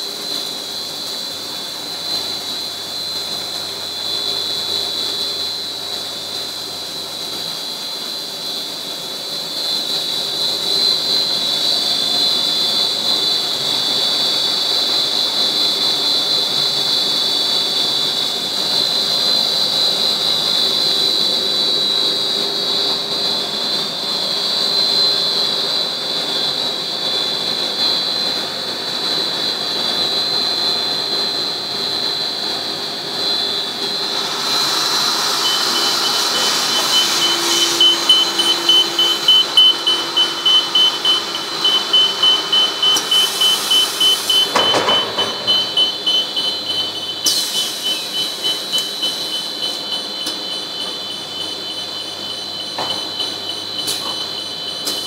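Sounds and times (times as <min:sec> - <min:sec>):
extrusion machine whining: 0:00.0 - 0:55.0
hiss: 0:34.1 - 0:39.3, 0:42.3 - 0:44.5, 0:47.2 - 0:49.9.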